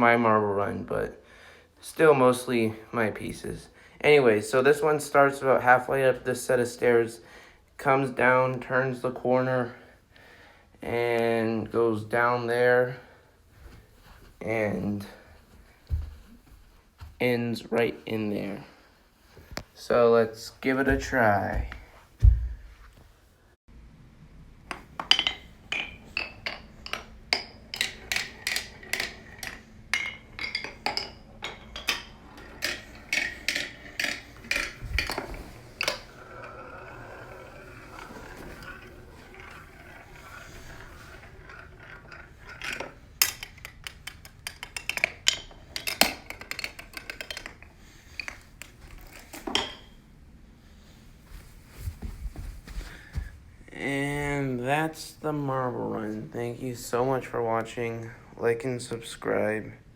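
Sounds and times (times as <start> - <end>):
marbles rolling whir: 27.4 - 43.0.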